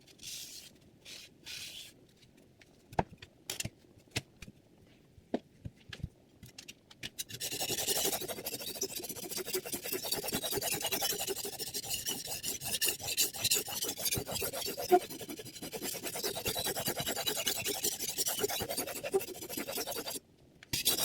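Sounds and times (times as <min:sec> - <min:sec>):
knife scraping on sharpening plate: 0:07.2 - 0:20.2, 0:20.8 - 0:21.0.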